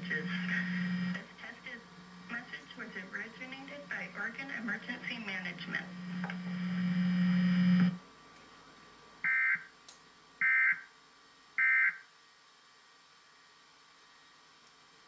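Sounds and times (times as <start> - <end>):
steady low buzz: 0.0 - 9.2.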